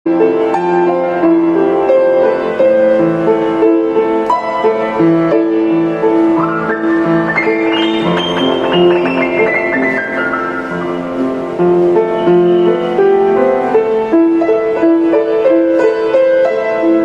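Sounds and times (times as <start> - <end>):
piano music: 0.1 - 17.0.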